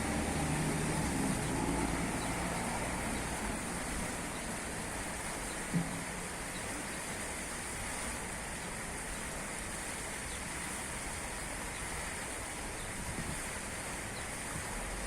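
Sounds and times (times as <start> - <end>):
steady hiss: 0.0 - 15.0.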